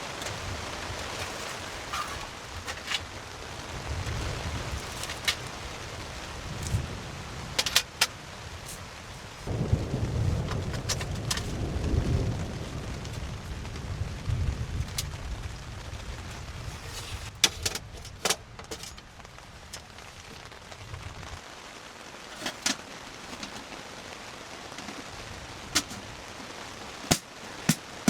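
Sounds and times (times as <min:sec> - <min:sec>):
thunder rumbling: 0:00.0 - 0:21.5
steady rain: 0:00.0 - 0:28.0.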